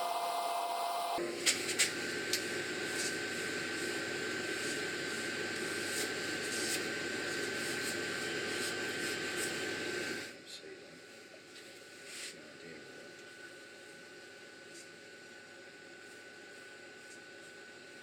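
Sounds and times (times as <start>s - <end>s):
wood lathe hiss and whine: 0.0s - 1.2s.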